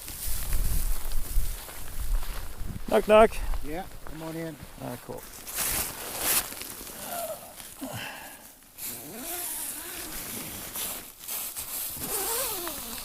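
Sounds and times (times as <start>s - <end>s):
wind buffeting microphone: 0.0s - 4.2s.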